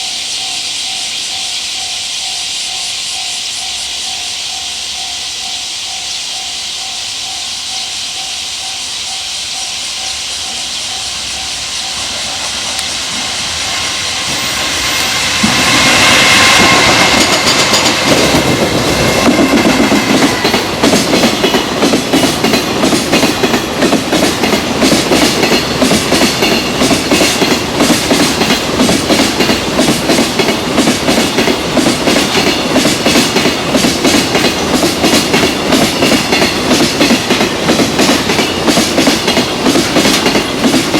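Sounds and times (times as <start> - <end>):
locomotive high whine: 0.0 - 22.2
train hiss: 0.0 - 40.9
wagons clickety-clack over rail joints: 10.4 - 40.9.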